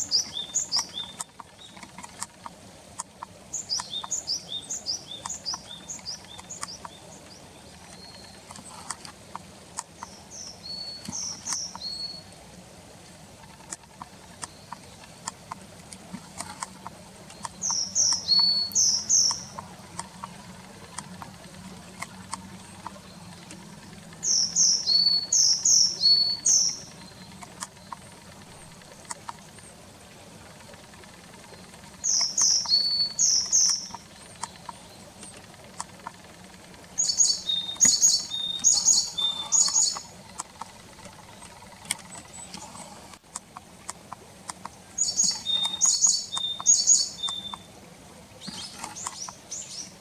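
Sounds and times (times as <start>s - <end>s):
faint clicks: 0.0s - 11.9s, 13.4s - 47.7s, 48.4s - 50.0s
tit birdsong: 0.0s - 43.2s, 44.5s - 50.0s.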